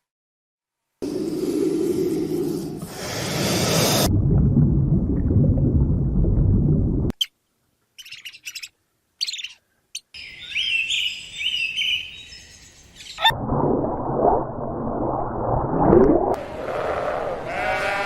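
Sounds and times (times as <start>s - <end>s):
high bird chirps: 8.0s - 13.3s
songbird singing: 8.0s - 13.3s.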